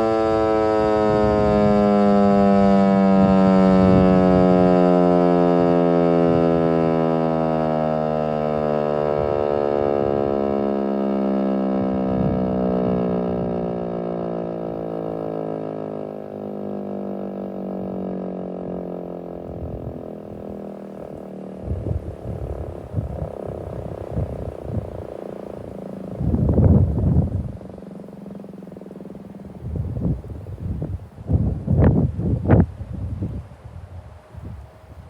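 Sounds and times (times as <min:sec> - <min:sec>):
tornado siren winding down: 0:00.0 - 0:33.3
low rumbling bumps: 0:21.1 - 0:27.7.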